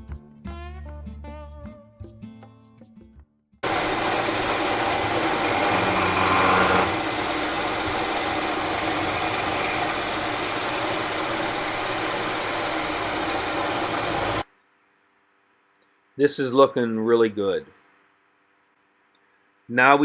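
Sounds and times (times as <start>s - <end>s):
milling machine cutting metal: 3.6s - 14.4s.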